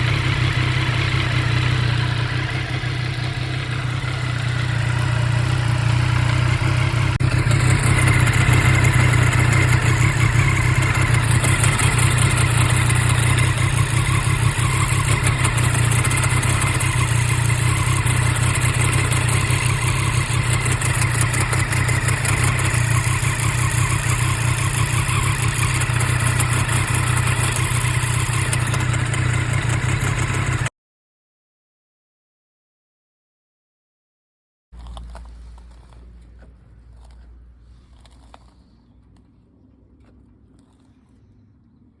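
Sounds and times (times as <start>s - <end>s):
grinding clatter: 0.0s - 30.7s, 34.8s - 41.2s
motorcycle engine idling: 0.0s - 30.7s.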